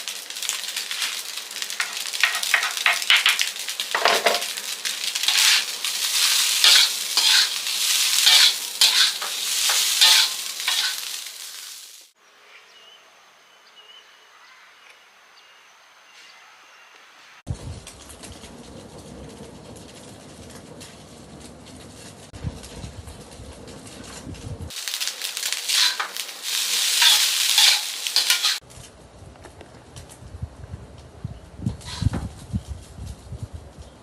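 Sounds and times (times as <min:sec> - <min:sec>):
food sizzling in a pan: 0:00.0 - 0:12.2, 0:24.7 - 0:28.6
stirring scraping and clicking: 0:01.8 - 0:04.6, 0:05.2 - 0:11.1, 0:26.9 - 0:28.6.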